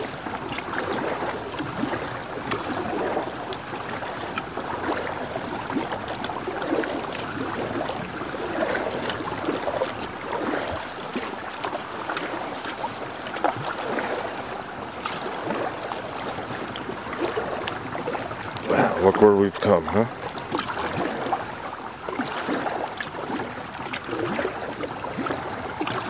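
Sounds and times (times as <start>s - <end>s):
paddle splashing in water: 0.0s - 26.0s.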